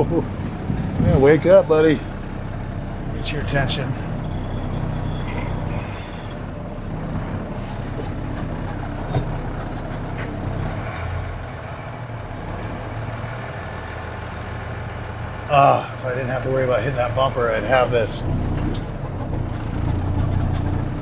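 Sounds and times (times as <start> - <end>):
diesel truck engine running: 0.0 - 21.0.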